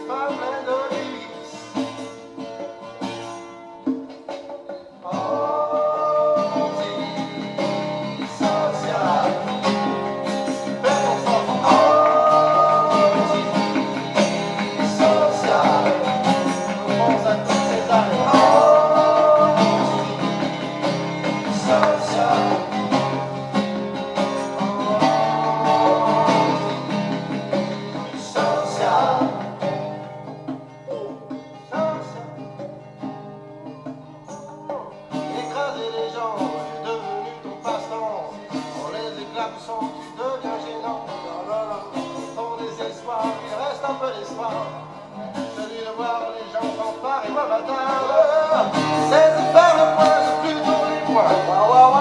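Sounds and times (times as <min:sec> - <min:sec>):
acoustic guitar rock music: 0:00.0 - 0:52.0.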